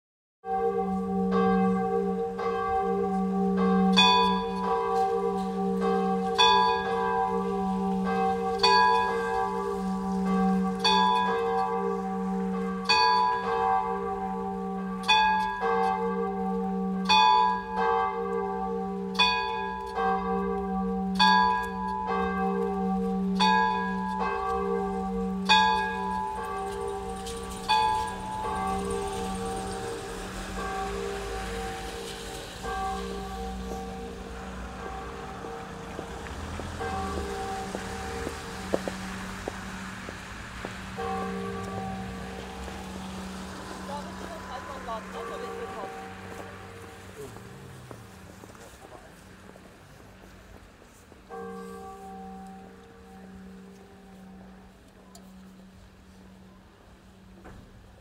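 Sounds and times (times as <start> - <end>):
church bells ringing: 0.4 - 58.0.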